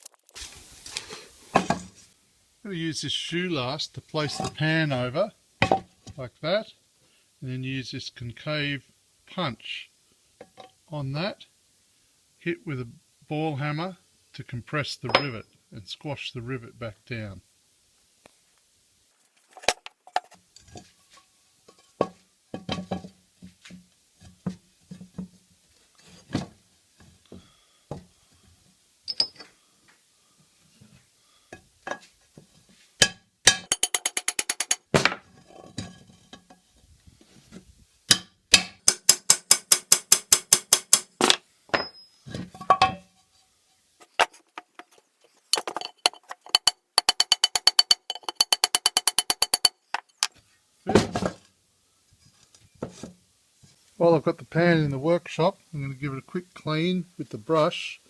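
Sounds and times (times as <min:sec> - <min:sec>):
hammer striking metal punch: 0:33.7 - 0:34.8, 0:44.0 - 0:50.3.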